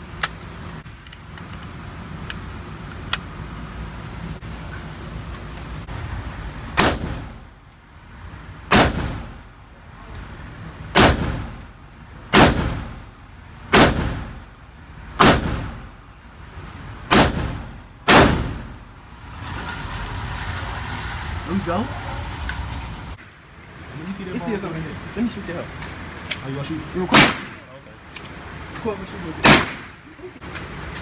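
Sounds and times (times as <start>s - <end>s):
gunshots with echo: 11.0s - 11.6s, 12.3s - 13.0s, 13.7s - 14.4s, 15.2s - 15.9s, 17.1s - 18.7s, 27.1s - 27.6s, 29.4s - 30.0s.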